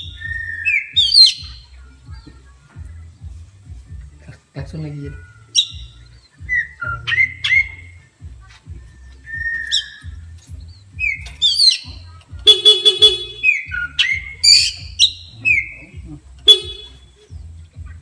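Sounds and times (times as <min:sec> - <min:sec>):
bird singing with whistles and chirps: 0:00.0 - 0:18.0
buzzy horn pulses: 0:10.0 - 0:18.0.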